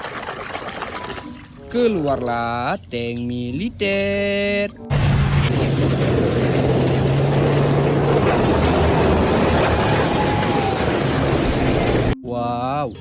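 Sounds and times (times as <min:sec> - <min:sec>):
low hum: 0:02.9 - 0:12.7
heavy engine rumble: 0:04.9 - 0:12.2.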